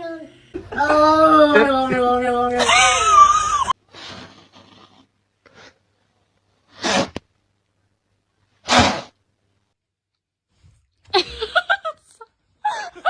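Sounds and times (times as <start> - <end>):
cat hissing: 6.7 - 7.2, 8.6 - 9.2.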